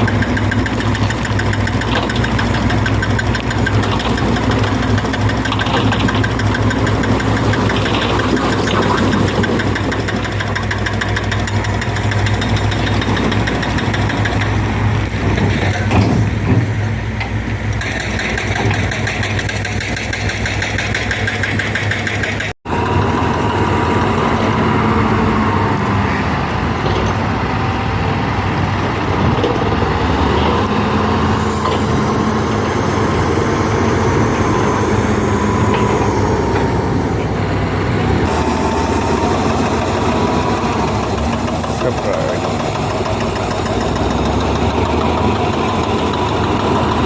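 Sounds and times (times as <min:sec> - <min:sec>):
diesel machinery running: 0:00.0 - 0:47.0
thin wavering whine: 0:31.4 - 0:42.0.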